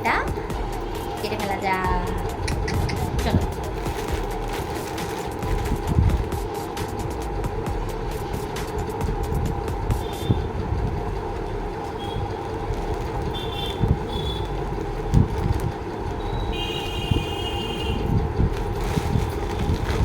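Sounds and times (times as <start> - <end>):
steady hum: 0.0 - 20.0
street traffic noise: 0.0 - 20.0
vehicle horn toots: 10.0 - 10.6, 12.0 - 12.4, 13.3 - 14.6, 16.2 - 18.2.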